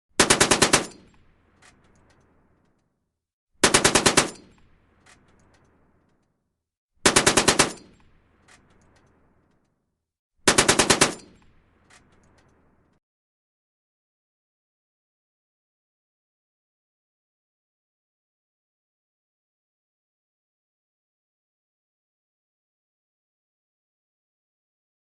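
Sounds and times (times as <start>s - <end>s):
machine gun bursts: 3.6s - 4.5s, 7.1s - 7.9s, 10.5s - 11.3s.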